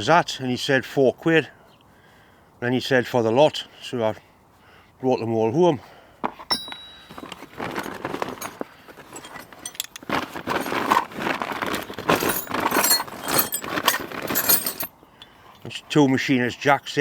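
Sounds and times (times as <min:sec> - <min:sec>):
metal hand tools clinking: 0:06.5 - 0:14.9.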